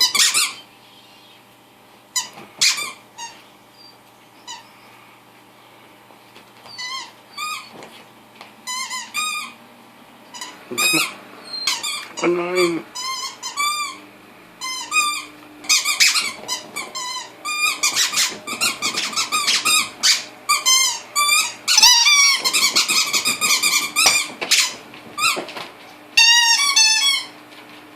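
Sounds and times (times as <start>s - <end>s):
squeaky toy ball squeaking: 0.0s - 0.6s, 2.2s - 3.4s, 6.7s - 7.7s, 8.6s - 9.6s, 10.3s - 12.3s, 13.0s - 14.0s, 14.6s - 25.4s, 26.2s - 27.3s.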